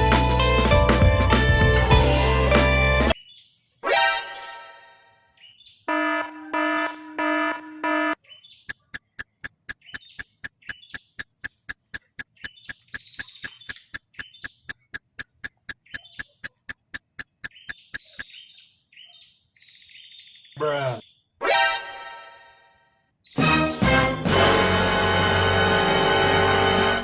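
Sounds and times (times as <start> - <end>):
birds chirping: 3.2 - 21.4
electronic alarm beeping: 5.9 - 18.3
short electronic ticks: 8.5 - 18.4.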